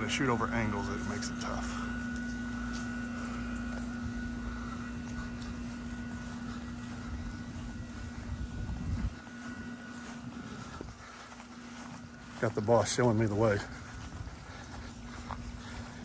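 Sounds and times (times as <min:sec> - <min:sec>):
low rumble on microphone: 0:00.0 - 0:12.4
pressure washer engine running: 0:00.0 - 0:16.0.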